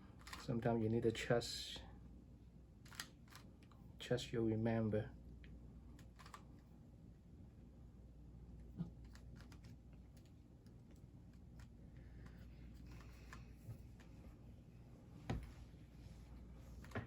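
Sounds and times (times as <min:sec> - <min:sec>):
plastic puzzle cube clicking: 0:02.8 - 0:03.7, 0:06.0 - 0:06.4.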